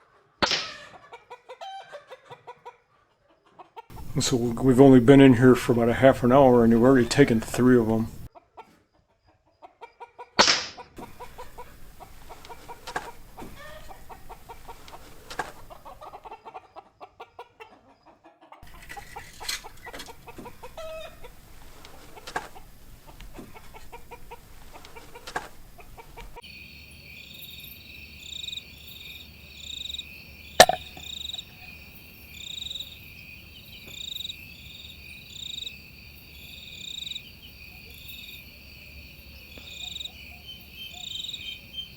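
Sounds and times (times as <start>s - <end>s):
clucking calls and clicks: 0.0s - 4.6s, 6.6s - 26.6s, 29.2s - 31.8s
airgun shot: 0.4s - 0.8s, 10.4s - 10.8s
crickets chirping: 26.4s - 41.9s.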